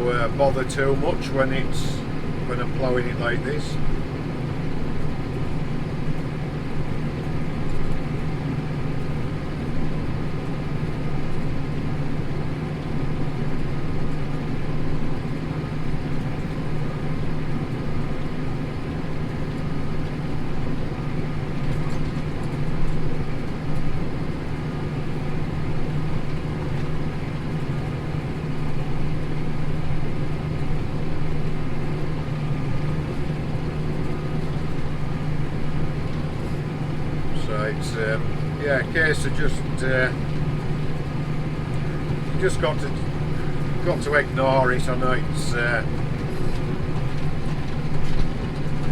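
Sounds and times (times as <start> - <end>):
tractor engine under load: 0.0 - 4.0, 20.7 - 48.9.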